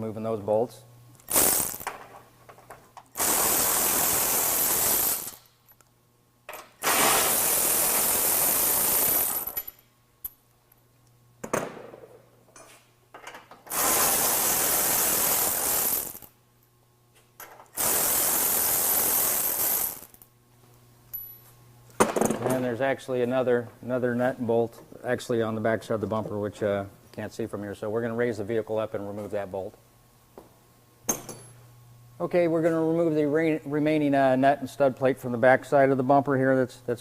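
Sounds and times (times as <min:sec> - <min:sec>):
power wrench running: 0:01.2 - 0:02.0, 0:03.2 - 0:05.5, 0:06.8 - 0:09.6, 0:13.7 - 0:16.3, 0:17.8 - 0:20.2.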